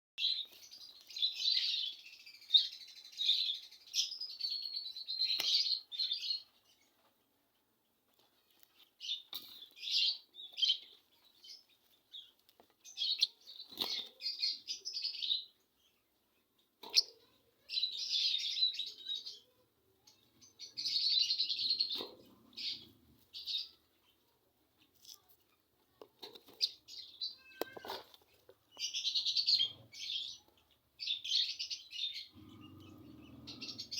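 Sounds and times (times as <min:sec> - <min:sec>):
chicks chirping: 0:26.2 - 0:33.9.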